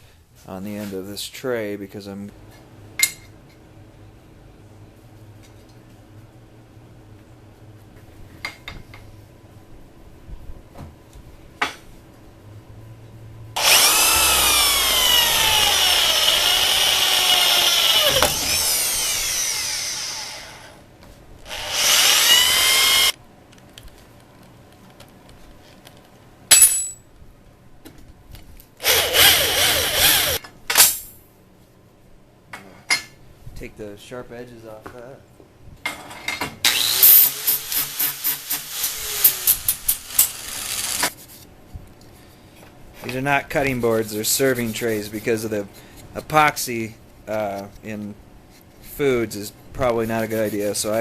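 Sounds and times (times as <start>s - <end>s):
electric drill running: 13.6s - 20.8s, 21.4s - 23.2s, 28.8s - 30.4s, 36.7s - 41.1s.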